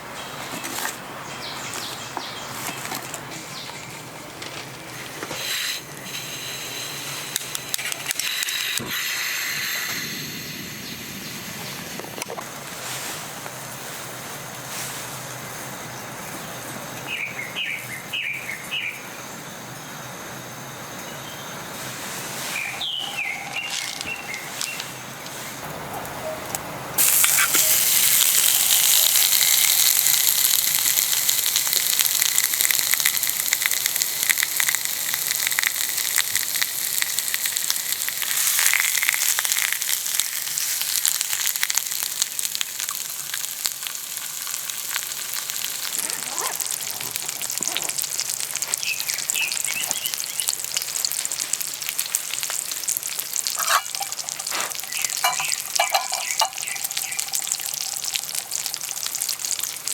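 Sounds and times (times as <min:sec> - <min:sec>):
food sizzling on a griddle: 0:04.9 - 0:11.9, 0:27.0 - 0:59.9.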